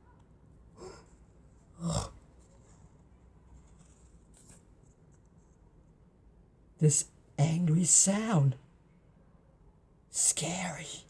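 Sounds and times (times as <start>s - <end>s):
person breath or murmur: 0.8s - 1.2s.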